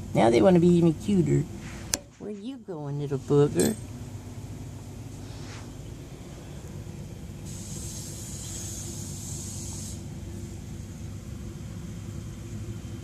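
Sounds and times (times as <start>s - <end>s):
low background hum: 0.0s - 13.0s
high airy hiss: 5.1s - 11.1s.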